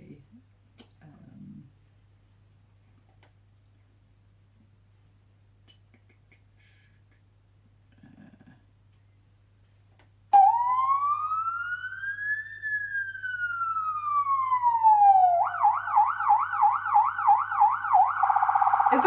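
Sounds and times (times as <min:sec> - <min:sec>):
siren wailing and yelping: 0:10.4 - 0:19.0.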